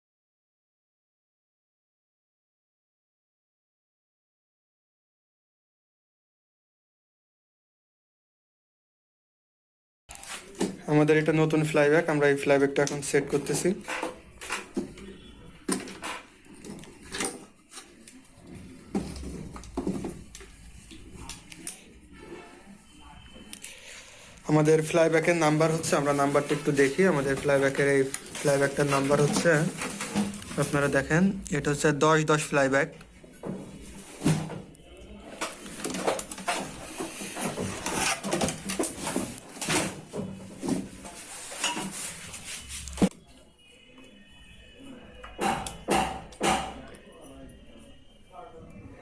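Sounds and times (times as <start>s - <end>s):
parts and tools clattering on workbench: 35.4s - 42.2s.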